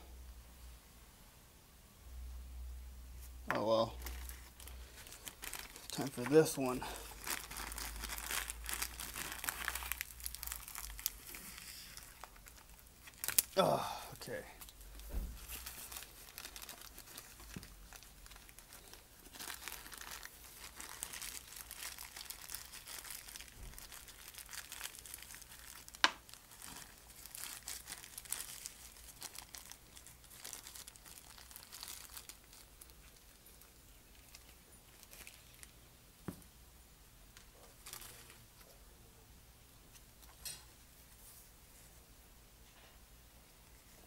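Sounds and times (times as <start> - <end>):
crinkling and rustling of parts: 3.4 - 36.4, 37.3 - 38.8.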